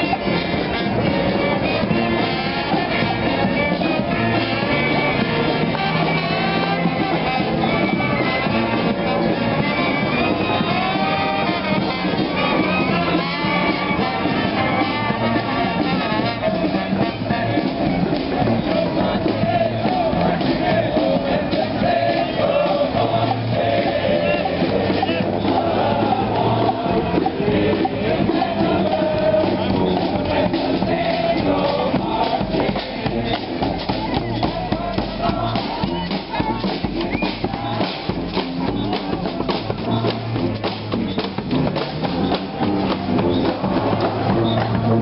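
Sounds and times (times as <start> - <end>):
brass band playing: 0.0 - 45.0.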